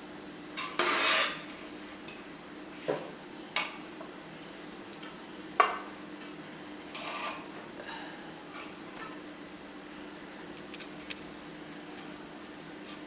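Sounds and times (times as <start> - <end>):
utensil scraping a pot: 0.6 - 1.4, 6.9 - 7.5.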